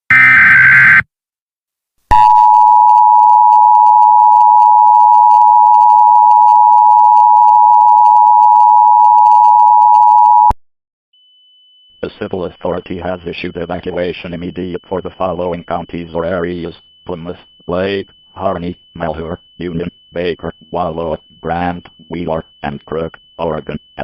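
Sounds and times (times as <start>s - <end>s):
digital data burst: 0.1s - 1.0s
loud steady two-tone alert: 0.1s - 1.0s, 11.2s - 24.0s.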